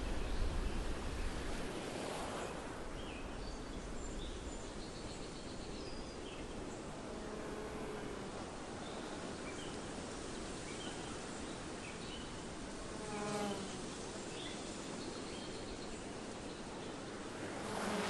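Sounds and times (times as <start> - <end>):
steady outdoor hiss: 0.0 - 18.0
insect buzzing past: 7.0 - 9.0, 12.6 - 14.5, 17.2 - 18.0.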